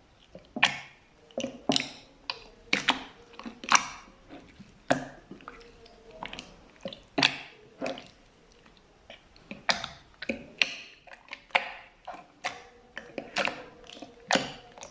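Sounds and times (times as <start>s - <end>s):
slime squished by hand: 0.2s - 14.9s.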